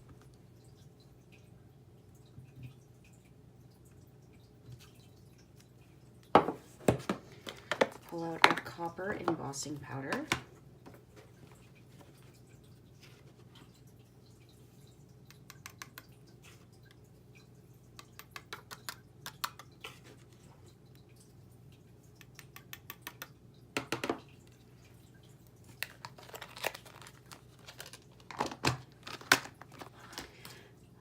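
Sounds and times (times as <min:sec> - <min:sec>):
container and cardstock rustling: 0:25.8 - 0:30.4.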